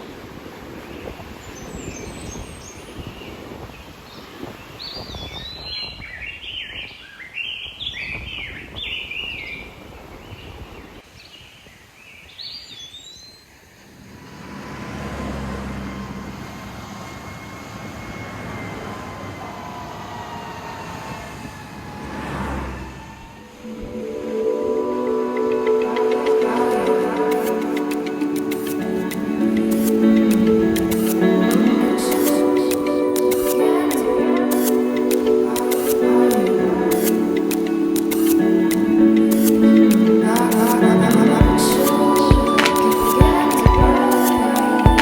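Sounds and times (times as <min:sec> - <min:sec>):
engine drone passing: 0:14.0 - 0:42.6.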